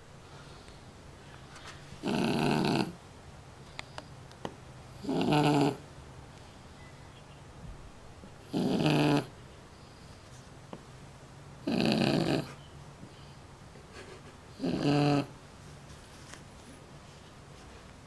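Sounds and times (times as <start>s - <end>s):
dog snoring: 2.0s - 3.0s, 5.0s - 5.8s, 8.4s - 9.3s, 11.6s - 12.6s, 14.6s - 15.3s.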